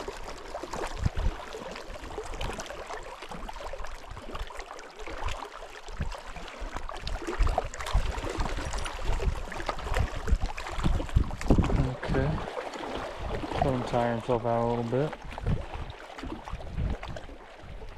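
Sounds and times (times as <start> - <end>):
water lapping: 0.0 - 17.9
wind buffeting microphone: 0.8 - 1.5, 7.0 - 17.9.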